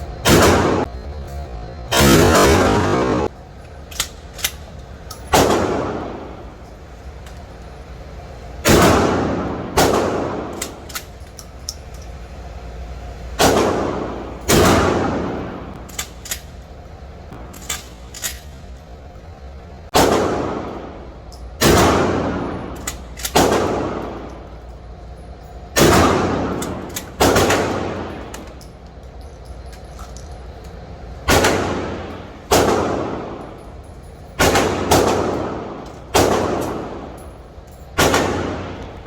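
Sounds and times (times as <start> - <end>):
shotgun shots: 0.2 - 0.9, 1.9 - 3.3, 5.3 - 6.4, 8.6 - 10.8, 13.4 - 15.7, 19.9 - 24.3, 25.8 - 28.3, 31.2 - 33.4, 34.4 - 37.2, 38.0 - 38.8.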